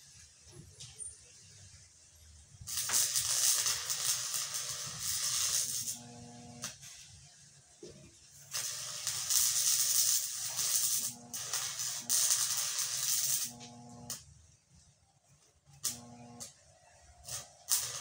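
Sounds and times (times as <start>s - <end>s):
electric arc welding crackling hiss: 0.0s - 14.3s, 15.7s - 16.6s, 17.2s - 18.0s.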